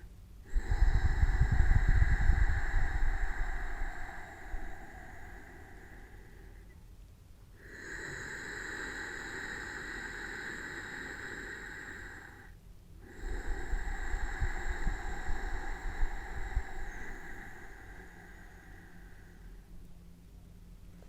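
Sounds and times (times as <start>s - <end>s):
hissing breath through throat: 0.0s - 6.8s, 7.6s - 19.7s
breath puffs on microphone: 0.4s - 6.6s, 13.0s - 19.7s.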